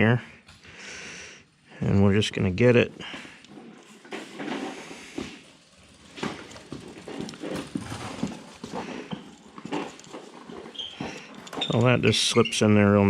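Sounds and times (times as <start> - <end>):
hand tools clicking and tapping metal: 3.1 - 12.7.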